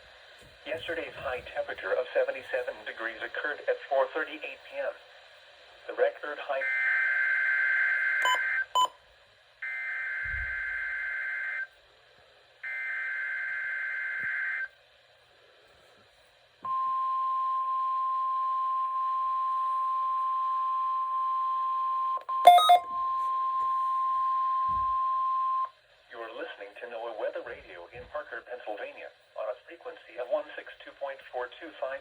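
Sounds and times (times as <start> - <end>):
steady warning alarm tone: 22.4 - 25.7.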